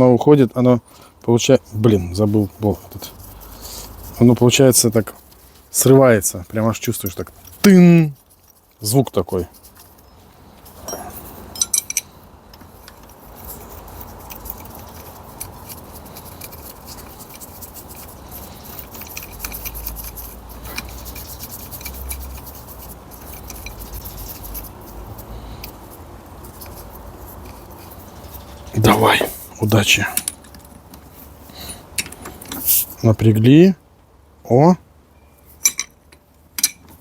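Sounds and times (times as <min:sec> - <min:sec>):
metallic tool clicks and taps: 0:35.6 - 0:37.0.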